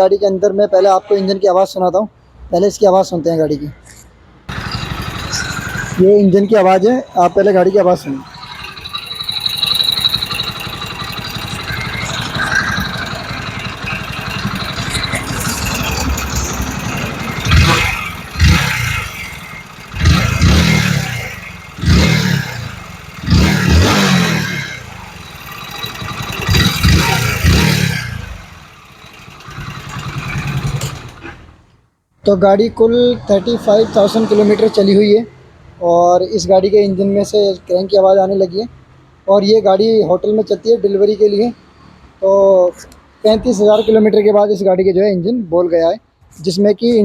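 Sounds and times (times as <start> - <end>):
motorcycle engine idling and revving: 4.5 - 31.9.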